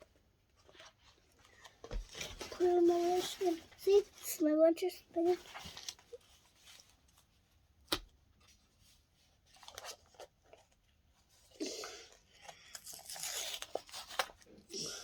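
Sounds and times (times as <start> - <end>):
packaging rustling and scraping: 0.6 - 4.5, 5.2 - 7.3, 12.3 - 14.5.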